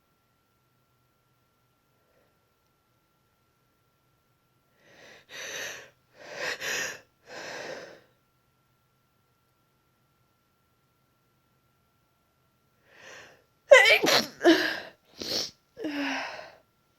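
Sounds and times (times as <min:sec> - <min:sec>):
woman sneezing: 0:13.7 - 0:16.1.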